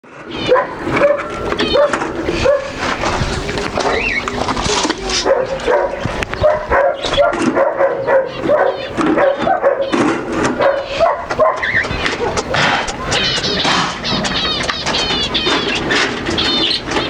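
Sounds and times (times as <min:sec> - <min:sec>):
dogs whining and yipping: 0:00.1 - 0:17.0
small birds chirping faintly: 0:00.1 - 0:17.0.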